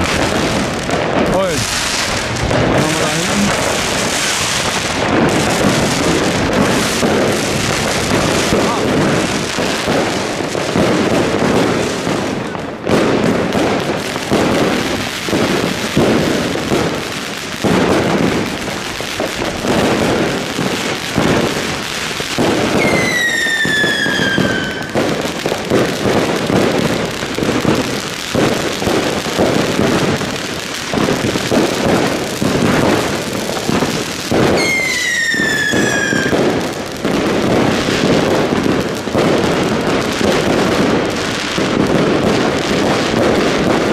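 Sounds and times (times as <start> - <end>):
fireworks bangs and crackling: 0.0 - 43.9
falling whistles: 22.8 - 24.8, 34.6 - 36.3.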